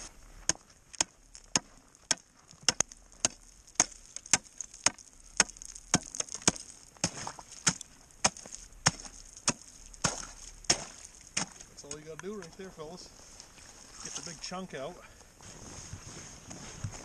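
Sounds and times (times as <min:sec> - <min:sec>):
tool chopping into ice: 0:00.5 - 0:11.6.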